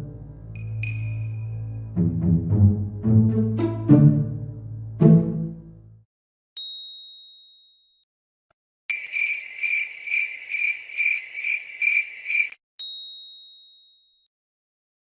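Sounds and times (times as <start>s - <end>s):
crickets chirping: 8.9s - 12.6s.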